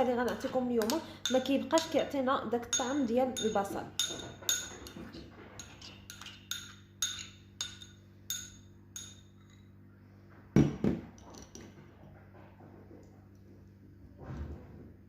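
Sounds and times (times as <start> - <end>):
spoon clinking on strainer: 2.7 - 5.0, 5.6 - 9.6
spoon knocking: 2.7 - 5.0, 5.6 - 9.5.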